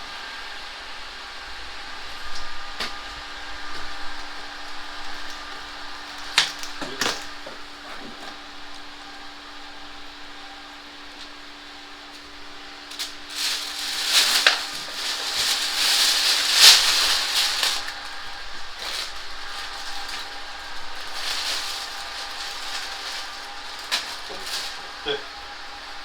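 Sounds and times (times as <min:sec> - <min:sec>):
vacuum pump humming: 0:00.0 - 0:26.0
rustling scraping handling noises: 0:12.2 - 0:25.2.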